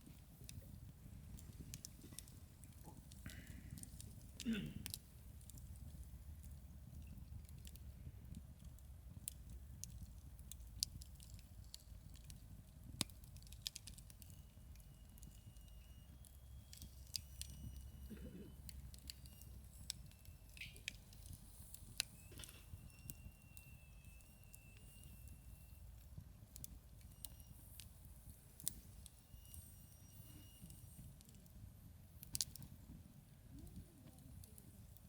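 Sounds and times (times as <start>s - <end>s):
wood fire crackling: 0.0s - 35.0s
high whistling tones: 14.2s - 26.1s, 26.8s - 31.2s.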